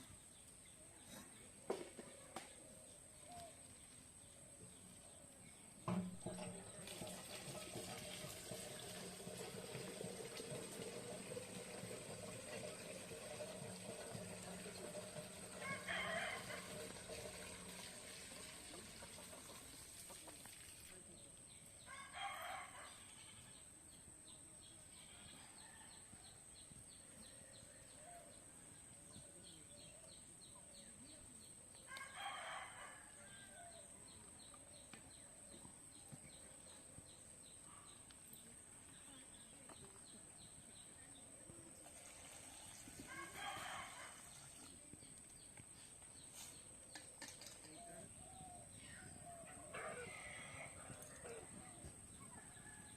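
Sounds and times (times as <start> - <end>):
faint background noise: 0.0 - 52.9
rooster crowing: 15.6 - 16.9, 21.9 - 23.3, 31.9 - 33.8, 43.1 - 44.3, 49.5 - 51.6.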